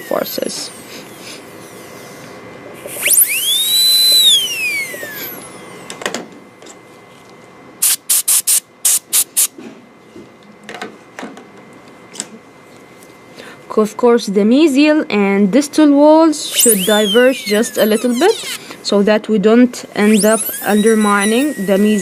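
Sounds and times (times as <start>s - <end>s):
dental drill whining: 0.0s - 6.0s, 16.4s - 18.9s, 20.0s - 22.0s
short hissing bursts: 7.8s - 9.5s.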